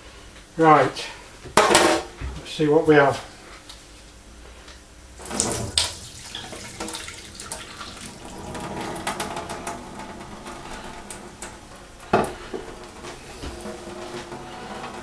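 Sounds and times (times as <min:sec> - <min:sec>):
liquid splashing through sieve: 0:05.2 - 0:10.4.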